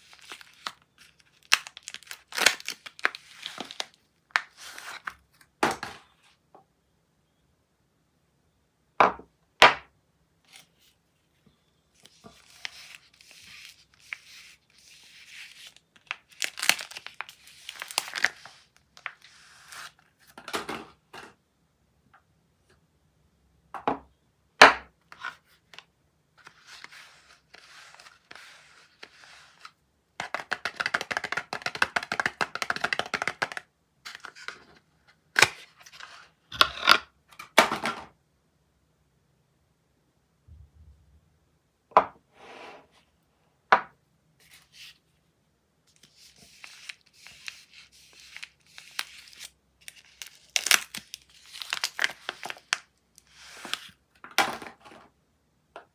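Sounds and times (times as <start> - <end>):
wrappers tearing and crinkling: 0.0 - 4.0, 15.3 - 18.4, 46.4 - 52.8
rapid crackling of packaging: 0.0 - 5.0, 12.0 - 19.2, 45.9 - 54.0.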